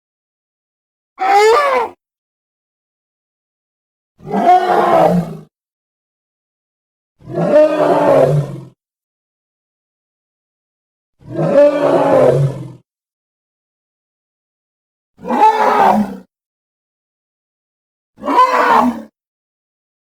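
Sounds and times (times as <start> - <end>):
gorilla roars: 1.2 - 2.0, 4.2 - 5.5, 7.2 - 8.8, 11.2 - 12.8, 15.2 - 16.3, 18.2 - 19.1.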